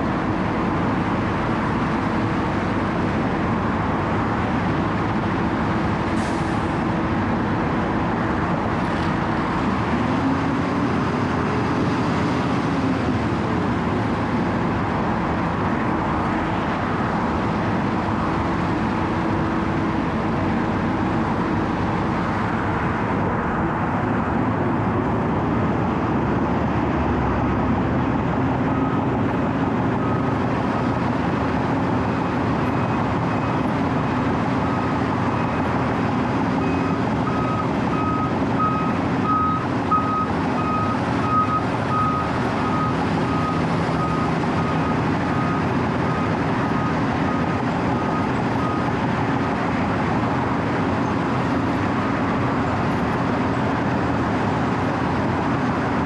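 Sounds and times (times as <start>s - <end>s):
diesel engine running: 0.0s - 56.0s
reversing alarm beeping: 36.6s - 48.9s.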